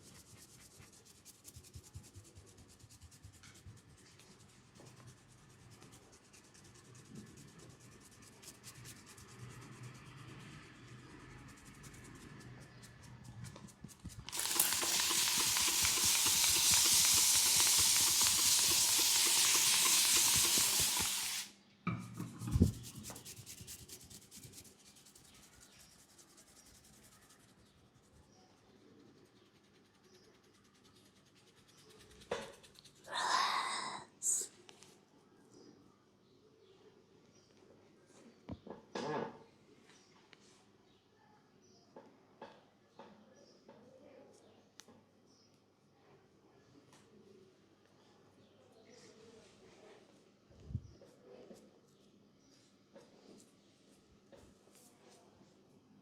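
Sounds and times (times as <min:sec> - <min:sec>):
hands rubbing hair and skin: 0:11.3 - 0:21.5
loud steady hiss: 0:14.3 - 0:21.6.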